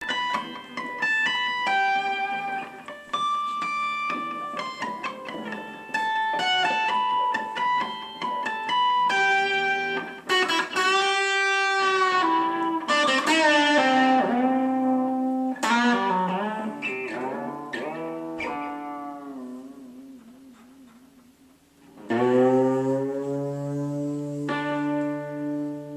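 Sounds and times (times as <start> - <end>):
plucked instrumental melody: 0.0 - 21.1, 21.8 - 25.9.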